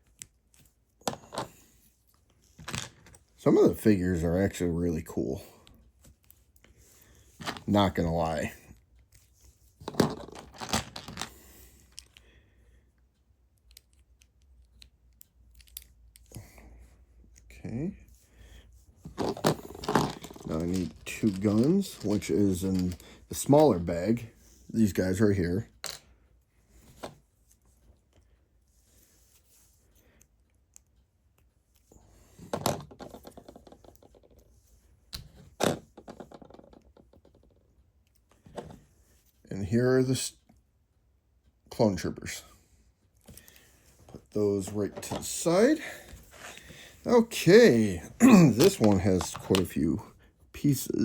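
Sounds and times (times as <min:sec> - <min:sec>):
small plastic parts clicking: 0:09.9 - 0:12.3, 0:13.5 - 0:16.4, 0:48.6 - 0:49.7
plastic pieces clicking: 0:13.6 - 0:16.4, 0:19.2 - 0:23.2, 0:48.3 - 0:49.7.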